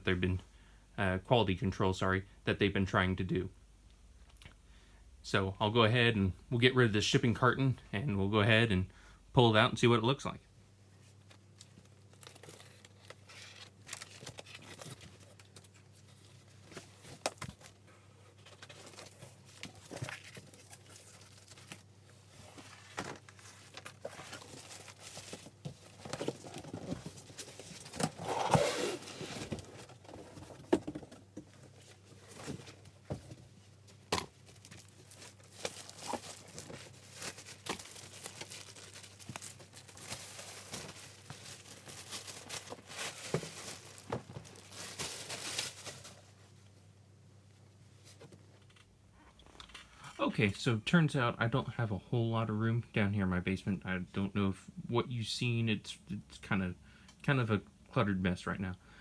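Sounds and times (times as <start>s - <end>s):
cardboard tearing and crinkling: 12.2s - 15.9s, 22.5s - 31.0s, 34.2s - 46.3s.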